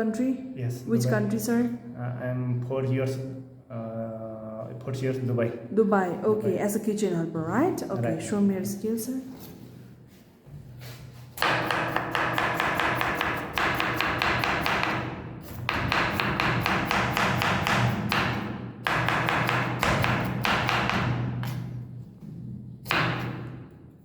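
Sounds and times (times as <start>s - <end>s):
knife chopping on cutting board: 11.4s - 21.7s, 22.9s - 23.4s.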